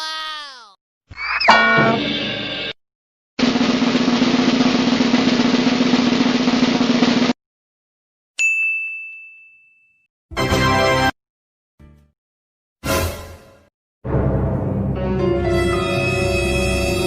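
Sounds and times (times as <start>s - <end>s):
bright ding: 1.5s - 2.1s, 8.4s - 10.0s
snare drum roll: 3.4s - 7.4s.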